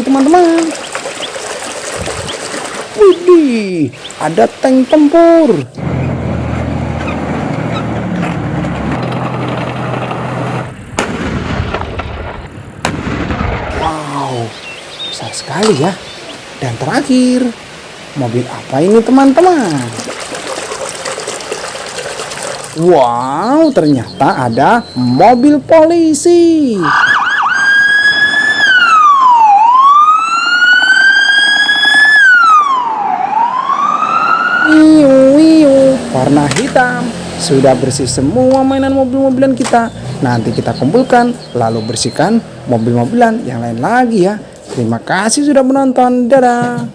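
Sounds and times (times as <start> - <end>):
tank engine rumble: 5.6 - 13.8, 35.0 - 43.8
sharp crack: 8.9 - 14.4
police siren wailing: 26.8 - 36.0.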